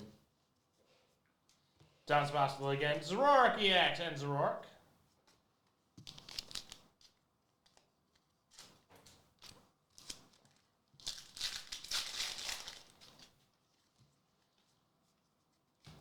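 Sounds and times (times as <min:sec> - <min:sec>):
foil wrapper tearing and crinkling: 0:11.0 - 0:13.3.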